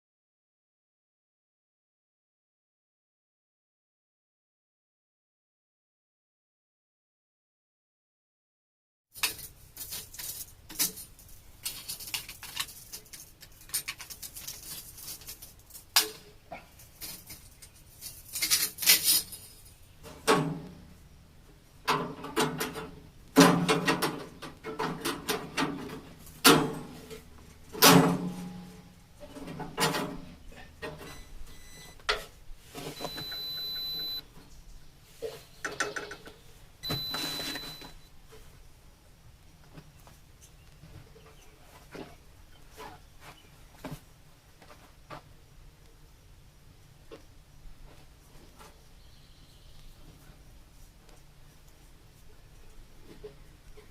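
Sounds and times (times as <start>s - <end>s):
clanks knocks and scrapes on sawmill: 21.9s - 31.2s.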